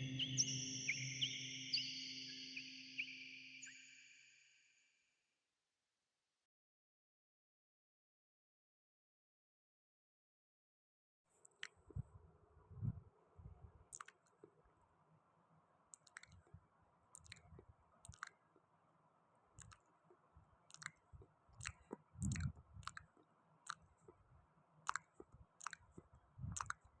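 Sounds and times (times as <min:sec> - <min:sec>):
person chewing: 0:13.9 - 0:14.5, 0:16.0 - 0:16.5, 0:17.2 - 0:18.4, 0:19.6 - 0:19.8, 0:20.7 - 0:24.2, 0:24.8 - 0:27.0.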